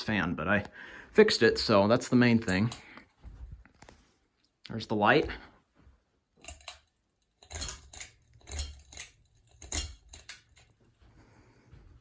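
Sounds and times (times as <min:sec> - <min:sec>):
fan pull chain clicking: 0:06.4 - 0:10.9.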